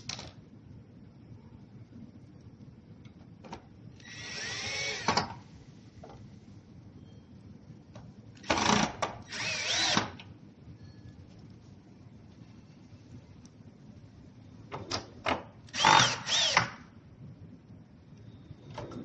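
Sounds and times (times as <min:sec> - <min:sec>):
power drill running: 0:04.0 - 0:05.2, 0:08.4 - 0:10.1, 0:15.7 - 0:16.8.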